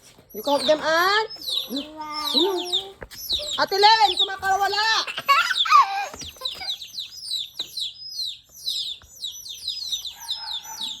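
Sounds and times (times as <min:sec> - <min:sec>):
baby chicks peeping: 0:00.0 - 0:11.0.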